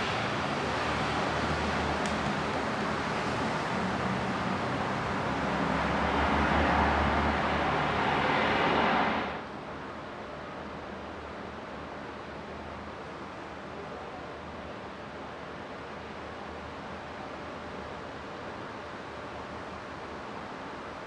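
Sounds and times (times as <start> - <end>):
strong gusty wind: 0.0 - 9.5
landing airliner rushing: 5.7 - 9.5.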